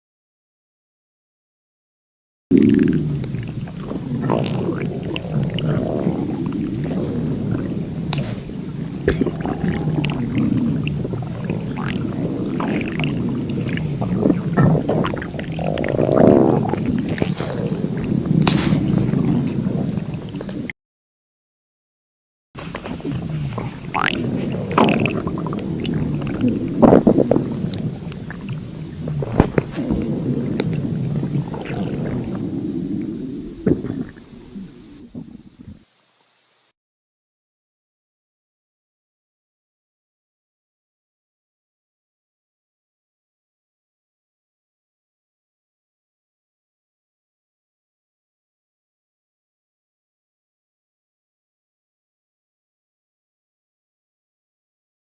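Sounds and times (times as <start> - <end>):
stomach growling and gurgling: 2.5 - 20.7, 22.6 - 35.9.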